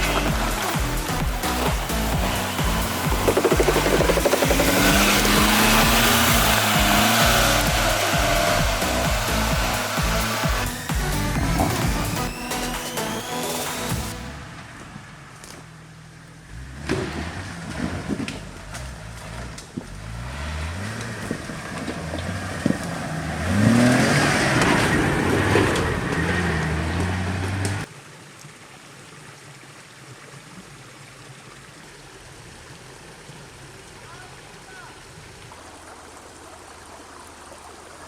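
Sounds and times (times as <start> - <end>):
engine revving under load: 0.0 - 15.7, 16.4 - 27.9.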